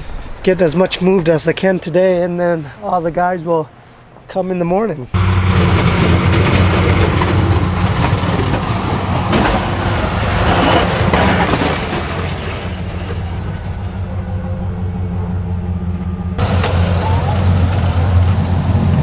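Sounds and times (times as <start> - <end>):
snow plow scraping snow: 5.2 - 14.2, 16.0 - 19.0
truck engine droning under load: 5.2 - 19.0.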